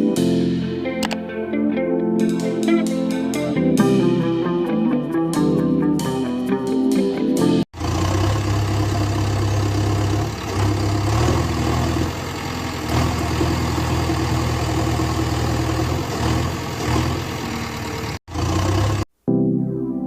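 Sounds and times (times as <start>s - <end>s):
heavy engine running: 7.8s - 19.1s.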